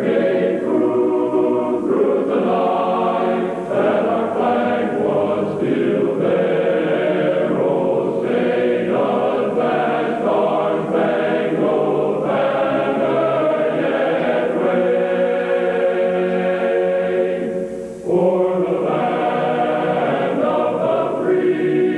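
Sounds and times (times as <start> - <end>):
choir singing held chords: 0.0 - 21.9.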